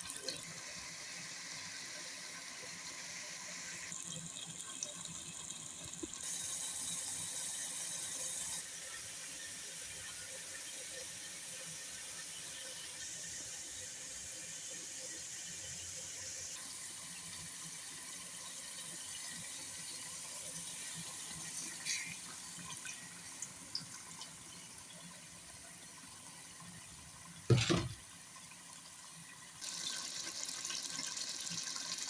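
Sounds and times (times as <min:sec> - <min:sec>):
water running from a tap: 0:00.0 - 0:32.0.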